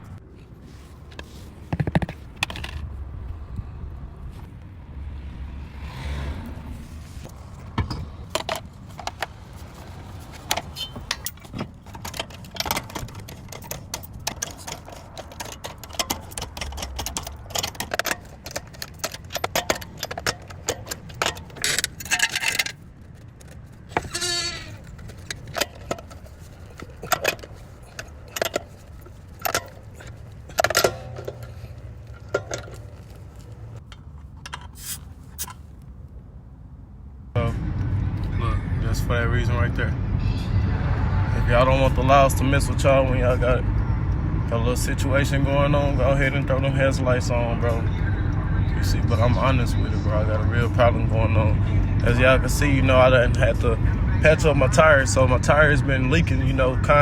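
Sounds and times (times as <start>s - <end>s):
low steady rumble: 0.0s - 57.0s
metal tools clicking: 10.1s - 35.6s
short squeak: 10.6s - 11.5s, 23.9s - 25.2s.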